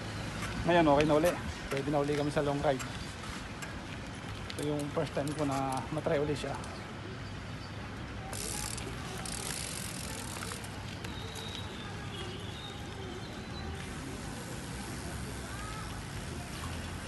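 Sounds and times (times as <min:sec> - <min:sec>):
bike tyres rolling: 0:00.0 - 0:06.8, 0:08.3 - 0:17.0
freewheel ratcheting: 0:08.3 - 0:10.7.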